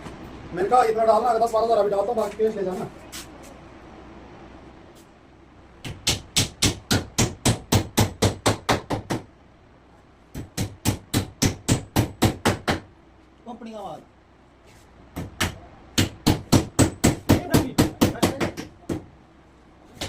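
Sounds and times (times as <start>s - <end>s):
hammer striking plywood: 5.8s - 9.3s, 10.3s - 12.9s, 15.2s - 19.1s.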